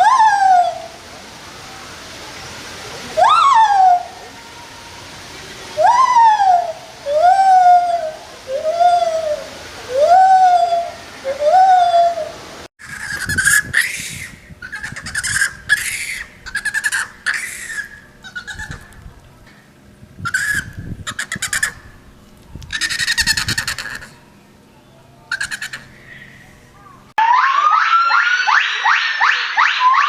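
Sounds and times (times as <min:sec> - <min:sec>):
monkey calling and chattering: 0:00.0 - 0:01.0, 0:03.1 - 0:04.3, 0:05.8 - 0:19.0, 0:20.2 - 0:22.0, 0:22.7 - 0:24.2, 0:25.3 - 0:30.0.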